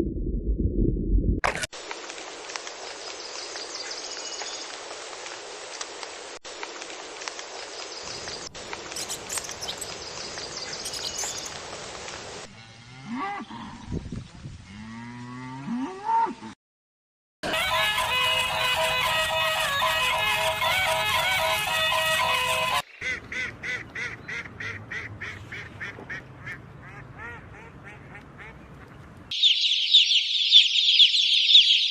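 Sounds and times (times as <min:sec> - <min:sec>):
cow mooing: 0:12.5 - 0:13.8, 0:14.7 - 0:16.6.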